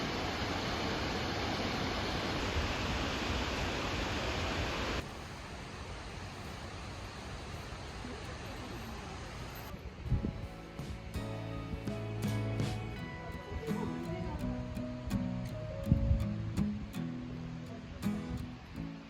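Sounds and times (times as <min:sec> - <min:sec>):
wind on microphone: 0:10.0 - 0:11.1, 0:15.6 - 0:16.9.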